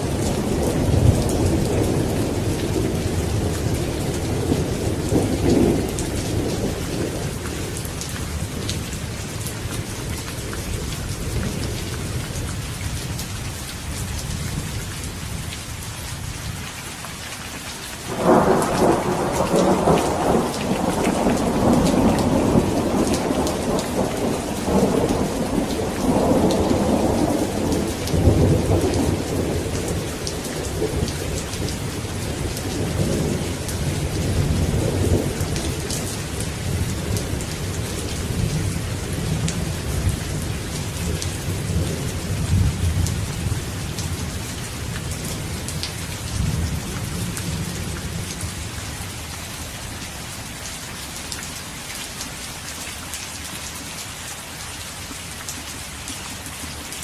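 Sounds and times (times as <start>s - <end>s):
rolling thunder: 0.0s - 9.8s, 18.1s - 48.5s
steady rain: 0.0s - 57.0s.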